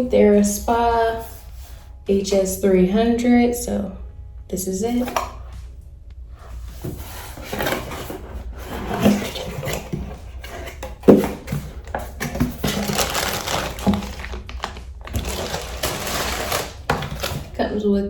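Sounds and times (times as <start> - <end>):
packaging rustling: 6.5 - 17.6.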